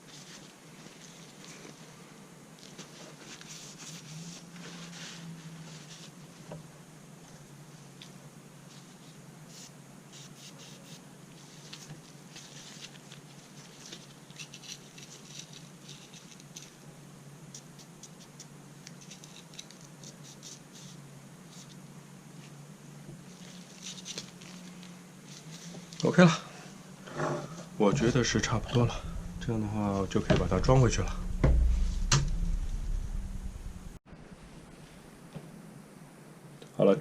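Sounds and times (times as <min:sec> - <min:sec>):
scratchy rubbing and brushing: 0:02.6 - 0:06.4, 0:08.7 - 0:16.7, 0:17.8 - 0:21.8
low hum: 0:27.7 - 0:35.1.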